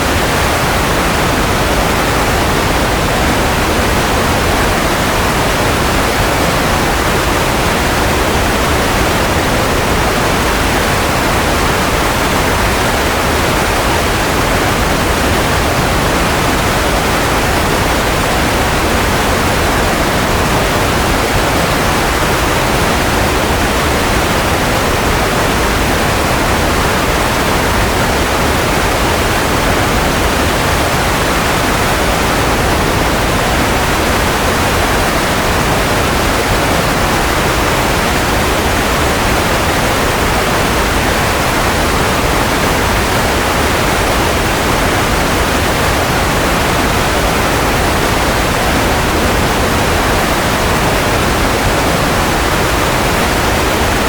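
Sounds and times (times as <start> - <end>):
steady white noise hiss: 0.0 - 54.0.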